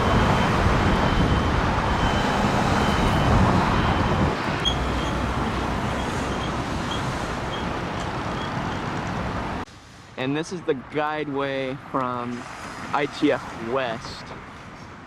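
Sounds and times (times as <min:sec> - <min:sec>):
road traffic passing: 0:00.0 - 0:15.0.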